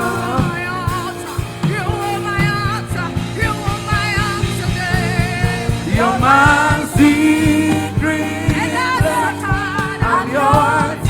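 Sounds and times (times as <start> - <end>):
band playing a worship song: 0.0 - 11.0
drums: 0.0 - 11.0
guitar: 0.0 - 11.0
keyboard chords: 0.0 - 11.0.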